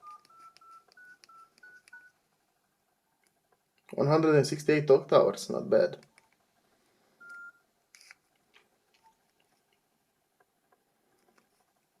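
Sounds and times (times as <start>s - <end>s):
phone key beep: 0.0s - 2.1s, 7.2s - 7.6s.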